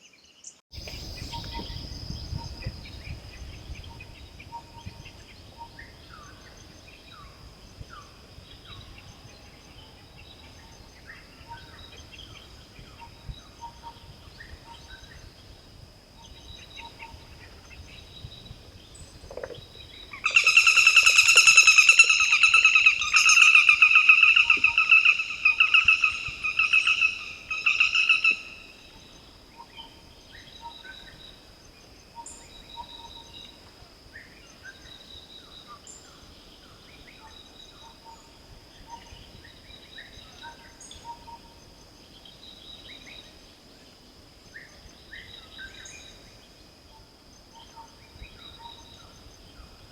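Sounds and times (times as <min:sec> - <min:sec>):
forest birds calling softly: 0:00.0 - 0:49.9
high insect whine: 0:00.8 - 0:49.9.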